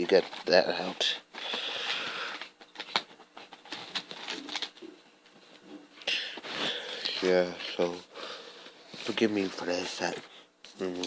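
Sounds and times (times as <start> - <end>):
packaging rustling: 0.0 - 8.0.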